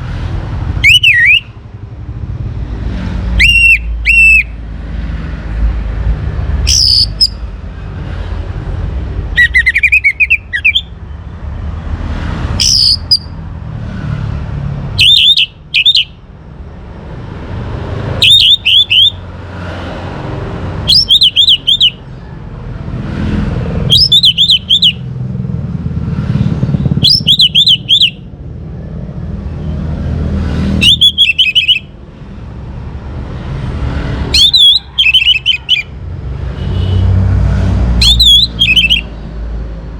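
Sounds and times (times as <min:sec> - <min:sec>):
bird singing warbled phrases: 0:00.7 - 0:01.6, 0:03.3 - 0:04.6, 0:06.6 - 0:07.4, 0:09.2 - 0:11.1, 0:12.6 - 0:13.4, 0:14.9 - 0:16.2, 0:18.1 - 0:19.2, 0:20.9 - 0:22.1, 0:23.8 - 0:25.1, 0:26.9 - 0:28.3, 0:30.8 - 0:32.0, 0:34.3 - 0:35.9, 0:38.0 - 0:39.2.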